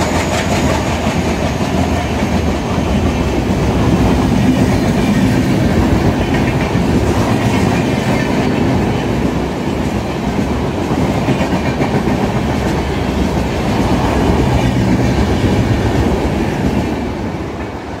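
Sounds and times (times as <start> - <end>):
train wheels clattering over rail joints: 0.0 - 17.9.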